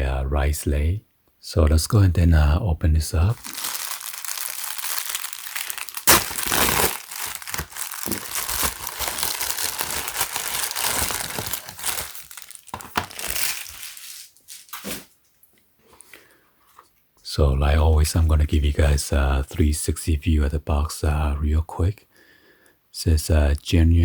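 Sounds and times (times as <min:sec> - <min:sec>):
plastic packaging crinkling and tearing: 0:03.3 - 0:15.1.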